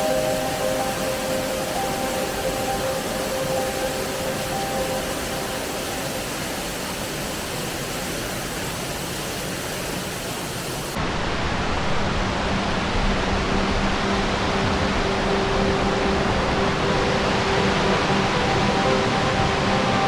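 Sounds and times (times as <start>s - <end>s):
stream and waterfalls rushing: 0.0s - 20.0s.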